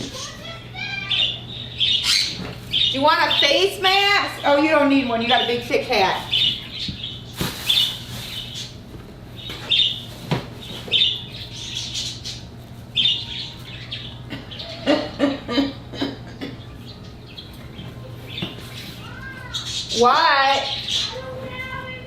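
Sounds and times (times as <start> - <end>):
steady low hum: 0.0 - 22.0
bird chirping: 0.1 - 8.8, 9.4 - 14.9.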